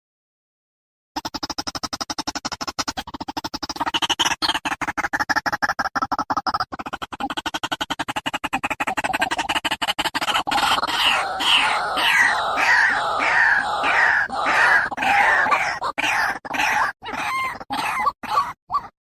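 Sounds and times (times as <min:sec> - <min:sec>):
waterhen calling: 0:10.5 - 0:18.9.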